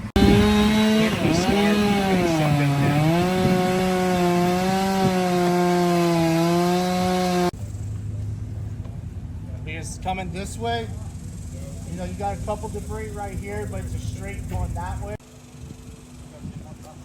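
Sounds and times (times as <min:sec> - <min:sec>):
chainsaw cutting wood: 0:00.0 - 0:07.6.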